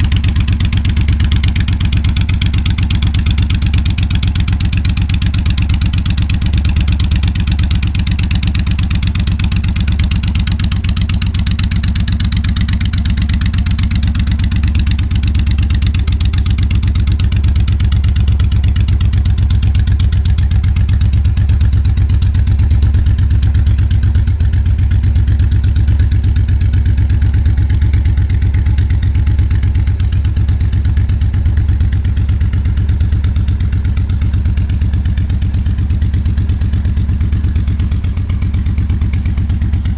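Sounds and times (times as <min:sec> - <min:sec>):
motorcycle engine idling: 0:00.0 - 0:39.9.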